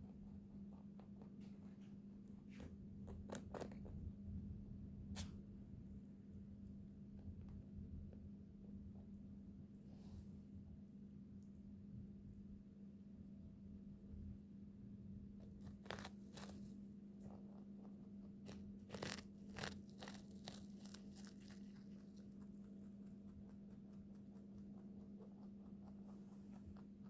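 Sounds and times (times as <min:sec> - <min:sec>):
rabbit crunching hay: 0:00.0 - 0:04.1, 0:15.3 - 0:27.0.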